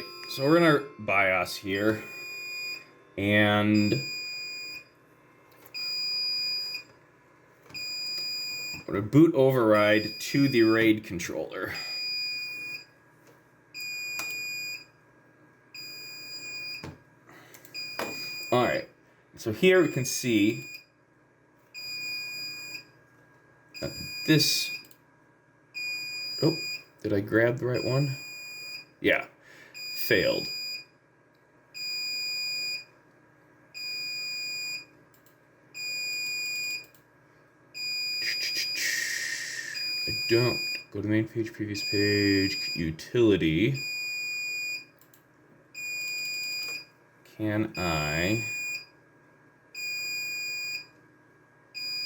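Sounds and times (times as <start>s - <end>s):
alarm buzzer beeping: 0.0s - 5.0s, 5.7s - 6.9s, 7.8s - 11.0s, 11.7s - 12.9s, 13.8s - 14.9s, 17.7s - 18.9s, 19.7s - 20.9s, 23.8s - 24.9s, 25.8s - 26.8s, 27.7s - 29.0s, 29.6s - 30.9s, 31.8s - 32.9s, 33.8s - 34.9s, 37.8s - 40.9s, 41.7s - 43.0s, 43.6s - 44.9s, 45.8s - 46.9s, 47.6s - 48.9s, 49.8s - 50.9s, 51.8s - 52.0s.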